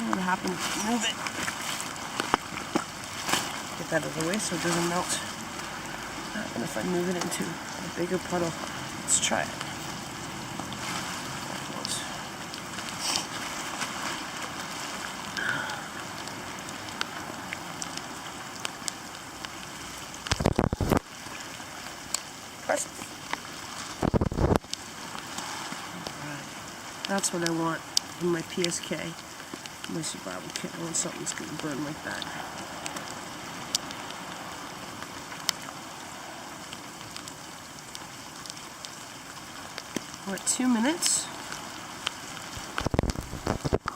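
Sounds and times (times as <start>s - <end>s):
steady rain hiss: 0.0s - 43.9s
water drips ticking: 0.0s - 43.9s
tinder cube hissing as it burns: 8.7s - 27.1s, 41.4s - 43.9s.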